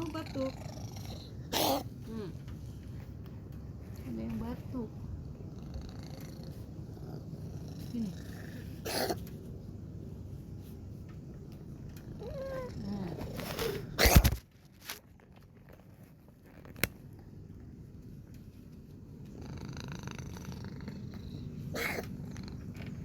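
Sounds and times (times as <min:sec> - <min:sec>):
cat purring: 0:00.0 - 0:14.0, 0:15.2 - 0:23.0
cat coughing: 0:01.4 - 0:01.9, 0:08.8 - 0:09.3, 0:13.6 - 0:14.4, 0:21.7 - 0:22.2
cat wavering sounds: 0:12.1 - 0:14.2, 0:19.4 - 0:22.8.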